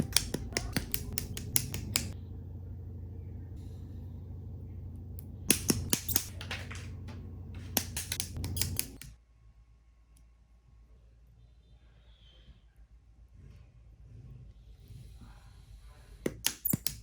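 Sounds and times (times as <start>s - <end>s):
nippers snipping plastic parts: 0.0s - 2.2s, 5.5s - 9.1s, 16.3s - 17.0s
low steady hum: 0.0s - 10.3s.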